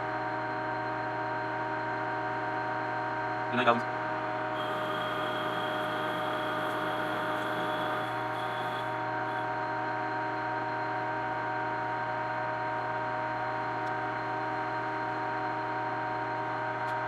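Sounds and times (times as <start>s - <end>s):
metal lathe motor humming: 4.0s - 10.0s.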